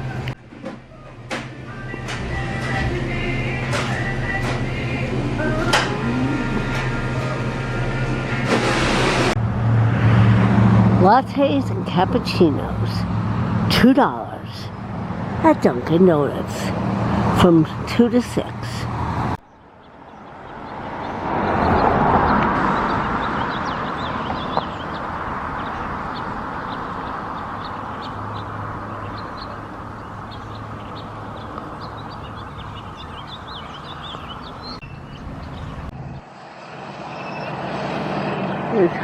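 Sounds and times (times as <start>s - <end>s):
small birds chirping: 19.4s - 36.2s.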